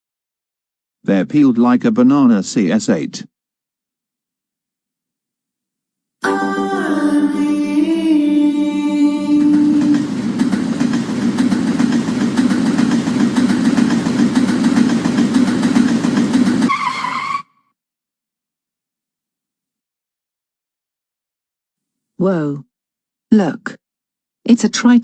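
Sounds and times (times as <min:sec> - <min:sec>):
underground train rumbling: 0:07.5 - 0:17.4.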